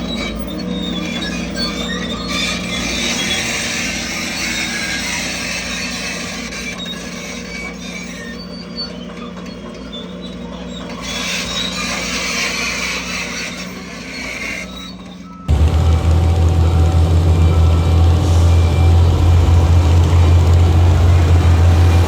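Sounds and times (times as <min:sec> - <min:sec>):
diesel engine running: 0:15.5 - 0:22.0
high-pitched squeaks: 0:15.6 - 0:22.0.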